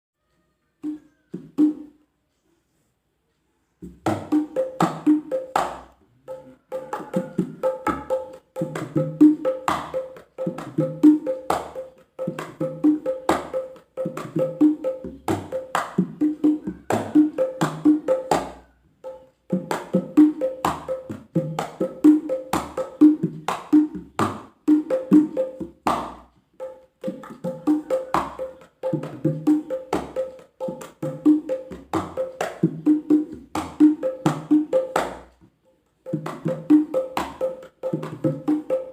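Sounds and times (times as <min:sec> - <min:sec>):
small wooden gong struck rhythmically: 0:04.1 - 0:35.2.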